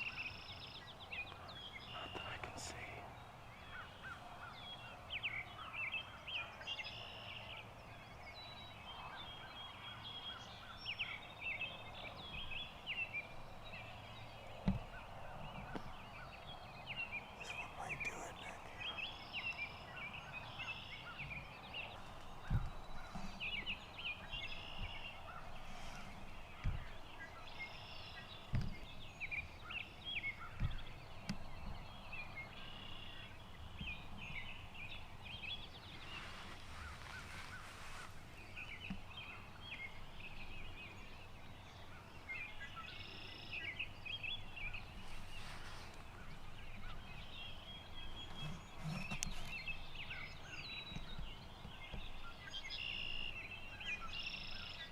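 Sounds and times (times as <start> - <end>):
birds chirping: 0.0 - 54.9.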